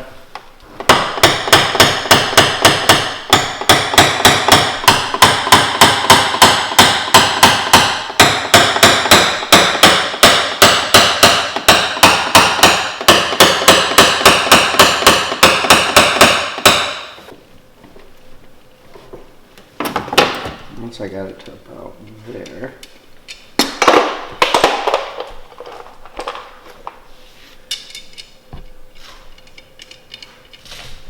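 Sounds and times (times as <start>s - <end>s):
hammer tapping on metal: 0.9s - 17.3s.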